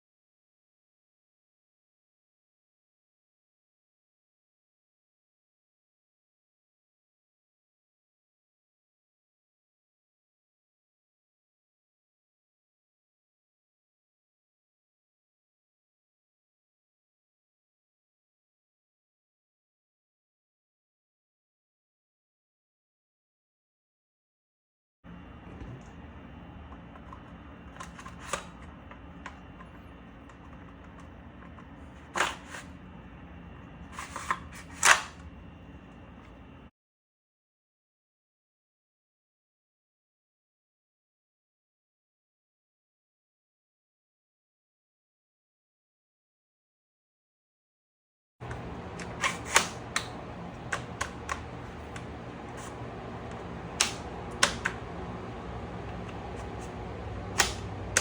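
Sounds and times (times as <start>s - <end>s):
toy gun parts clicking: 34.0s - 35.2s, 48.5s - 52.7s, 53.3s - 54.8s, 57.4s - 58.0s
low hum: 48.4s - 58.0s.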